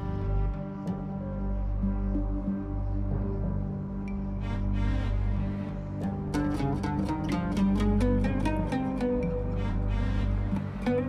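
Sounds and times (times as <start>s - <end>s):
plucked string notes: 3.2s - 11.0s.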